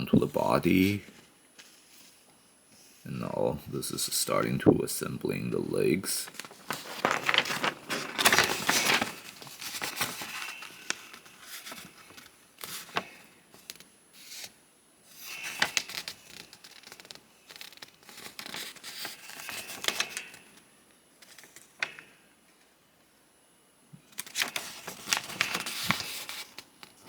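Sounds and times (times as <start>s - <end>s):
paper pages rustling: 6.2s - 14.5s, 15.2s - 20.6s, 24.1s - 27.0s.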